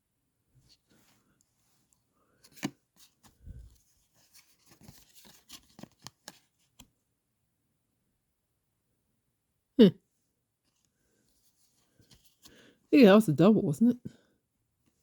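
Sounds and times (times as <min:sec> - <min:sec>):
cards clicking and rustling: 0:02.4 - 0:03.3, 0:04.2 - 0:06.9.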